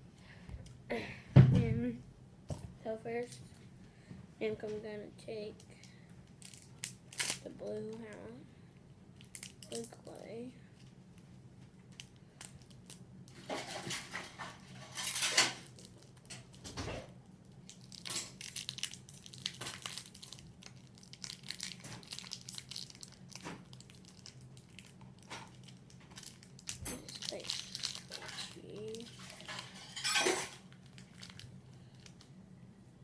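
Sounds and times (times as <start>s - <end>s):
faint steady hum: 0.0s - 33.0s
plastic container rustling and scraping: 13.4s - 15.4s.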